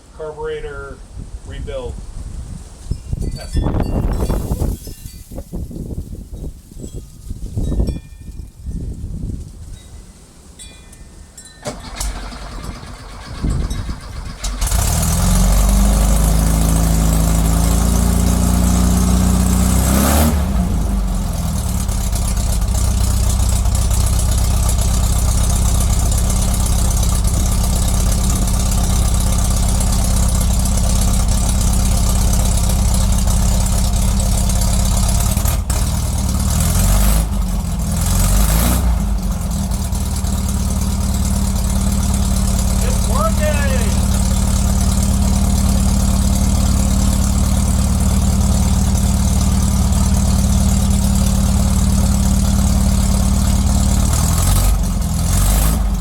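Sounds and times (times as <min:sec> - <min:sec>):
car engine starting and idling: 0:11.4 - 0:56.0.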